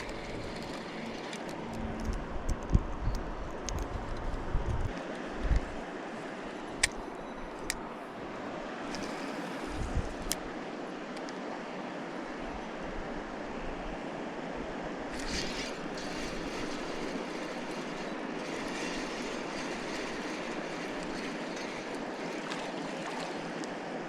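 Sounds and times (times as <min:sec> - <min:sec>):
river water rushing: 0:10.4 - 0:24.0.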